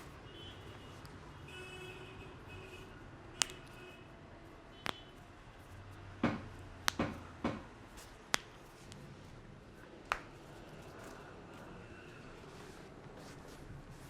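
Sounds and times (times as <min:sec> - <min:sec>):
hands slapping during massage: 0:03.4 - 0:03.8, 0:04.8 - 0:05.2, 0:06.2 - 0:09.2, 0:10.0 - 0:11.2.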